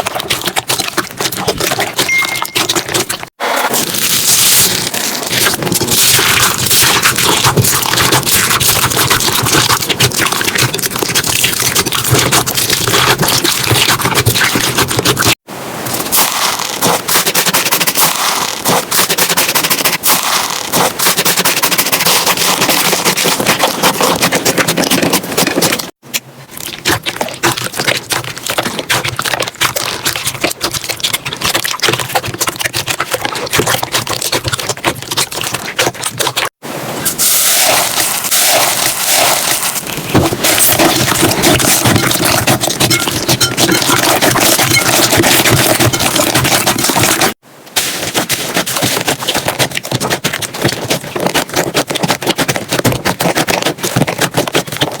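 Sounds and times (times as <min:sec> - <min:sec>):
slime squeezed and stretched: 0:00.0 - 0:15.4, 0:37.0 - 0:55.0.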